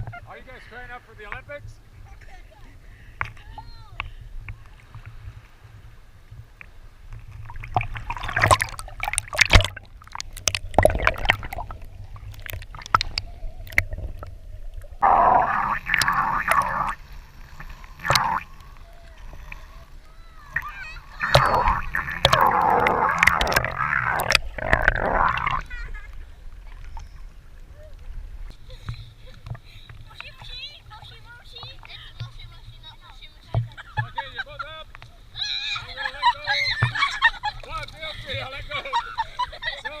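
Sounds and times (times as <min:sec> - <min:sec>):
paddles splashing in water: 0:00.0 - 0:40.0
children shouting: 0:20.1 - 0:21.6.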